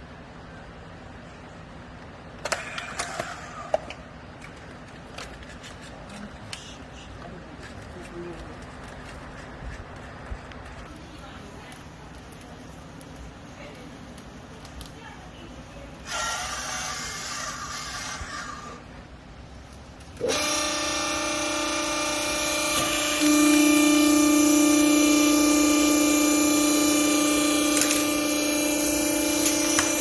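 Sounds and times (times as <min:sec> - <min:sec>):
machine whine: 0:20.0 - 0:30.0.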